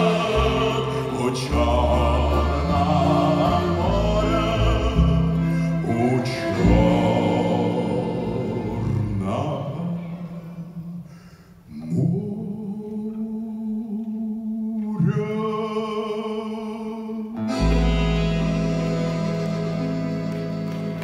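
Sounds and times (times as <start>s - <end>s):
small ensemble playing chords: 0.0s - 10.9s, 17.4s - 21.0s.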